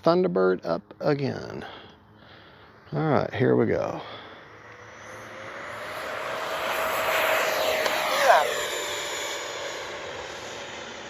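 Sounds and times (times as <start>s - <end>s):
model jet fan whooshing: 4.4s - 11.0s.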